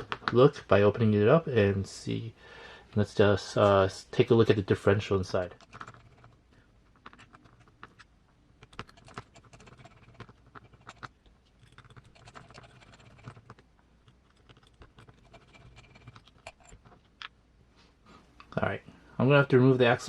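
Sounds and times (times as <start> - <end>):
metal parts clicking and tapping: 5.5 - 17.4.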